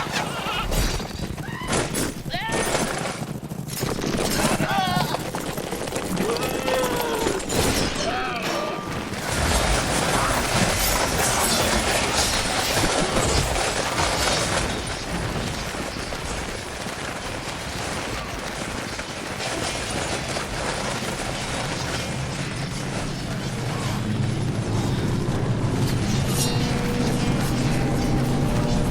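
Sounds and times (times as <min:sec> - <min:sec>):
battle clashing impacts: 0:00.0 - 0:28.9
people shouting: 0:06.2 - 0:09.0.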